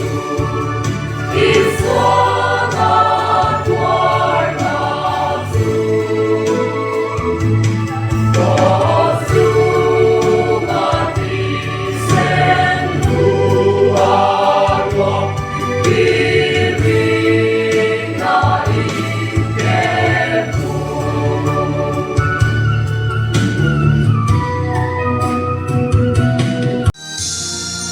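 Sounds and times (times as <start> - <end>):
gospel choir singing: 0.0 - 24.5
low musical accompaniment: 0.0 - 27.9.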